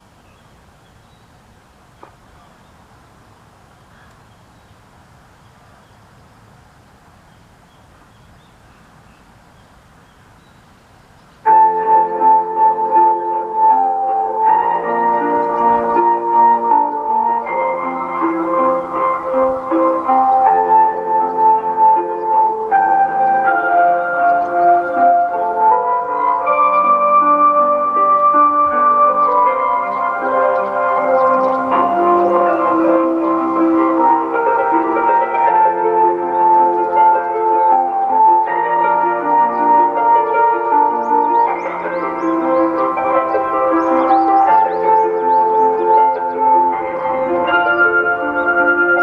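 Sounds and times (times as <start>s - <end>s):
bird chirps: 0.0s - 6.1s, 7.2s - 12.2s, 15.0s - 16.4s, 23.7s - 27.2s, 28.3s - 34.2s, 40.7s - 49.0s
steady background hiss: 0.0s - 49.0s.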